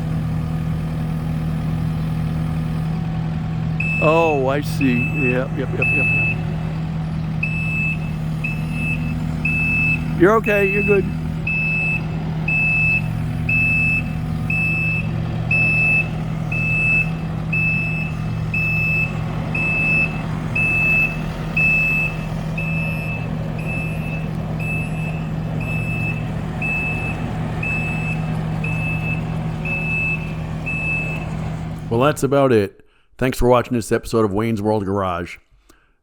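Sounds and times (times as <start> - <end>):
engine running steadily: 0.0 - 32.2
reversing alarm beeping: 3.8 - 6.8, 7.4 - 31.3.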